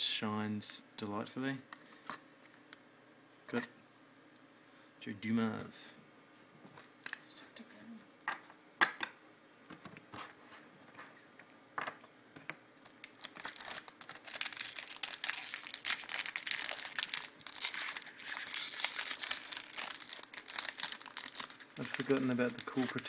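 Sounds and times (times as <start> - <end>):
crinkling of foil wrapper: 12.8 - 23.0.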